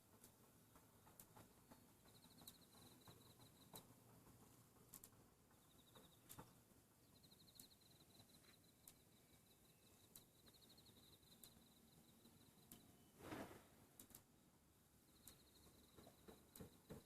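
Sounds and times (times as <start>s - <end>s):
faint high chirping trills: 2.0s - 4.0s, 5.5s - 13.2s, 14.1s - 17.0s.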